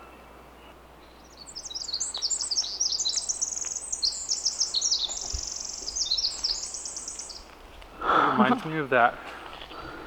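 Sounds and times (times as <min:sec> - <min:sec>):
songbird singing with rapid trills: 0:00.6 - 0:07.6.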